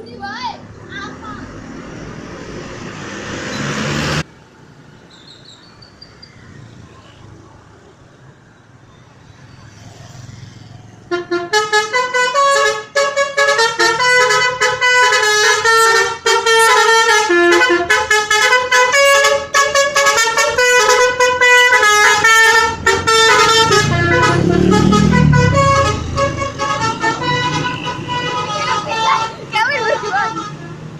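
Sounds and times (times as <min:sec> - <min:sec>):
multi-tone bus horn melody: 0:11.1 - 0:30.9.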